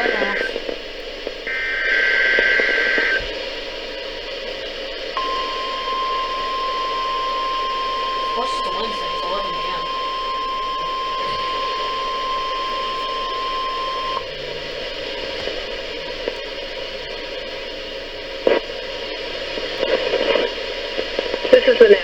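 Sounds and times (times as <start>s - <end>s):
radio crackle: 0.0s - 22.0s
radio hiss: 0.0s - 22.0s
steady alarm tone: 5.2s - 15.9s.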